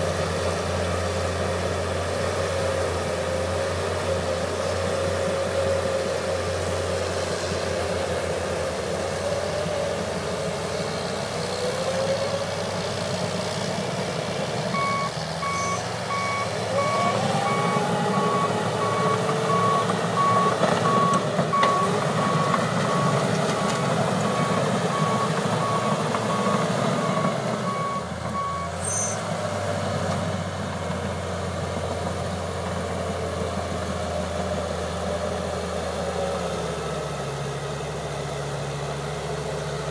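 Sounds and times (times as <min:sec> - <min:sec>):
bulldozer diesel engine under load: 0:00.0 - 0:39.9
backup alarm beeping: 0:14.8 - 0:23.2, 0:24.3 - 0:28.7.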